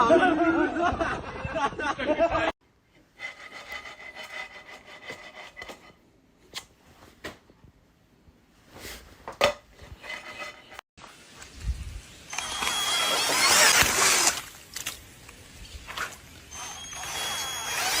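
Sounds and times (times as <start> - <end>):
rubbing and scraping: 3.0 - 7.2, 8.6 - 10.8
high squeak: 16.5 - 18.0.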